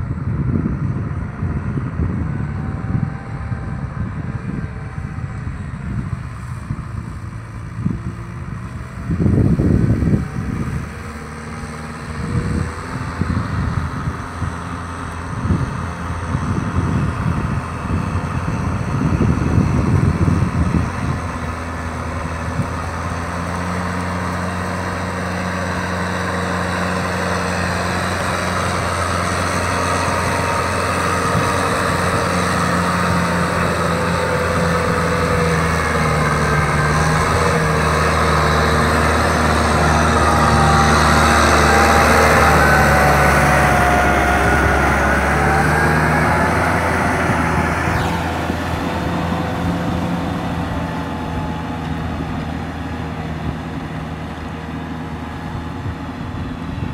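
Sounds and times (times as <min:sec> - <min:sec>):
gusty rumble: 0:00.0 - 0:56.9
tractor diesel engine under load: 0:00.0 - 0:56.9
rising higher tones: 0:26.6 - 0:53.2.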